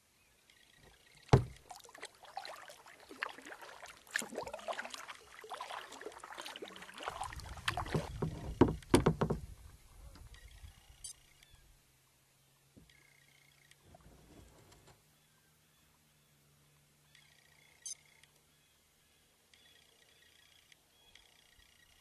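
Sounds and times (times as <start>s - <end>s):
paddle knocking on hull: 1.3s - 1.8s, 5.6s - 9.6s
water splashing and dripping: 1.3s - 9.3s.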